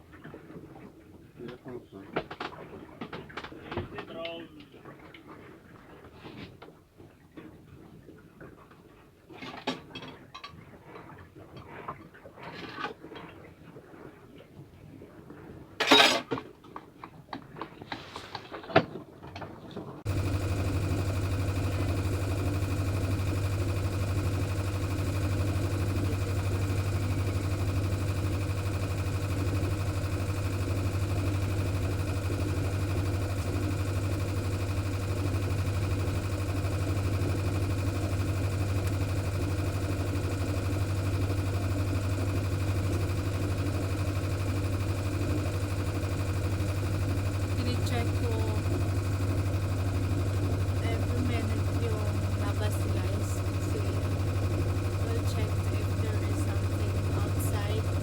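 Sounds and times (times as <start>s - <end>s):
steady mechanical drone: 20.1s - 58.0s.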